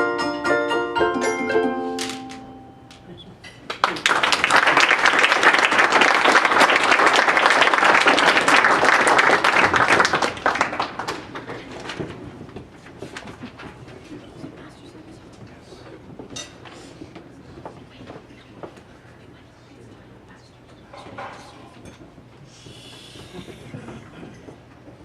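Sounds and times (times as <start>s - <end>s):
audience applause: 3.6s - 12.2s.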